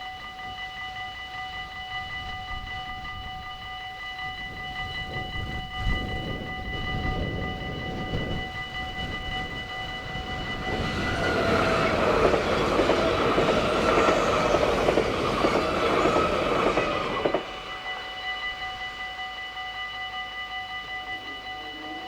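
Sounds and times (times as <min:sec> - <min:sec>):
level crossing warning bell: 0:00.0 - 0:22.0
train wheels on rails: 0:04.2 - 0:19.4.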